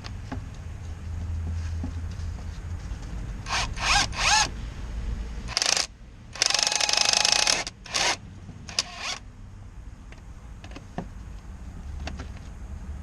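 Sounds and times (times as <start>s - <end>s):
impact wrench whining and hammering: 3.4s - 4.5s, 5.5s - 9.2s.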